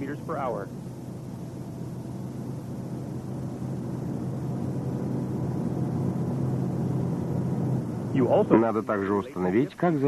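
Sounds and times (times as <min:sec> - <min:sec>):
car engine and road noise: 0:00.0 - 0:10.0.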